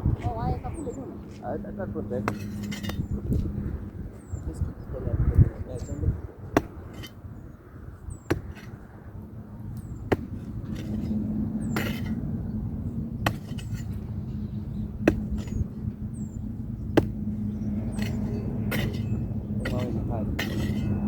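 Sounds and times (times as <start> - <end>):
steady low hum: 0.0 - 21.0
hand tool striking: 2.2 - 3.1, 10.1 - 12.2, 13.2 - 14.0, 15.0 - 15.7, 17.8 - 21.0.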